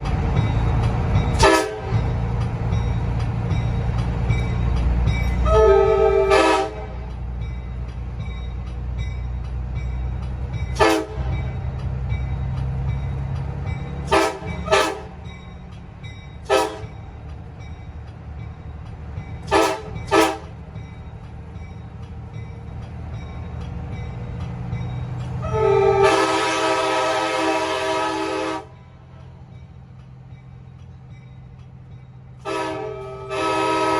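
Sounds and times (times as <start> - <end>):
train horn blasts: 1.4 - 2.1, 5.4 - 7.1, 10.7 - 11.4, 14.0 - 15.2, 16.5 - 17.0, 19.4 - 20.6, 25.4 - 28.8, 32.4 - 33.9.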